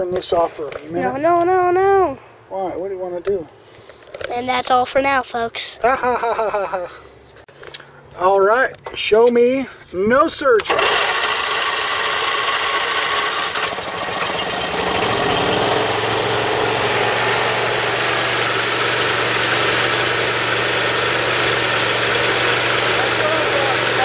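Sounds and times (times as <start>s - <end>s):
engine running: 10.6s - 24.0s.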